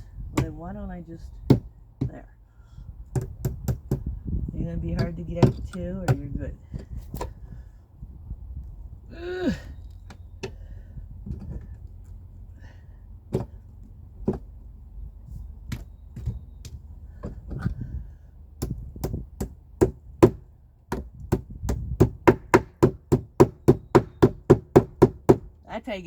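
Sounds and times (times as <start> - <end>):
hammer striking nails in wood: 3.1 - 4.1, 18.6 - 25.5.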